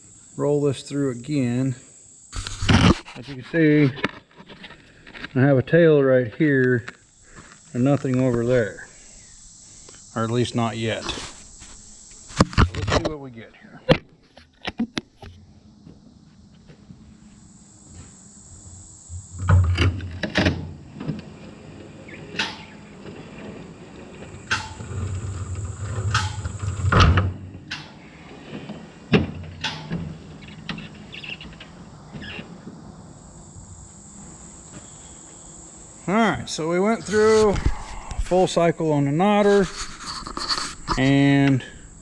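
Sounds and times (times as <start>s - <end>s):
crickets chirping: 0.0s - 42.0s
metal clanks and clicks of baler mechanism: 22.3s - 23.5s, 24.5s - 25.2s, 25.8s - 28.0s, 28.6s - 30.9s.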